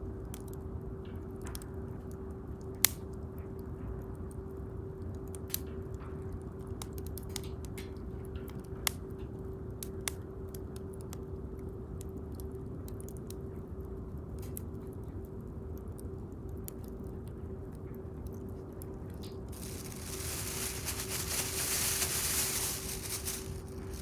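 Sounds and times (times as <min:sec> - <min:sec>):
bonfire crackling and popping: 0:19.5 - 0:24.0.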